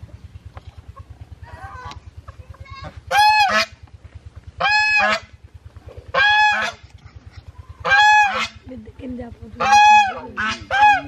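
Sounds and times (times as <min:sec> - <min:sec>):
farm animal calls: 0:00.0 - 0:11.0
low fast throb: 0:00.0 - 0:11.0.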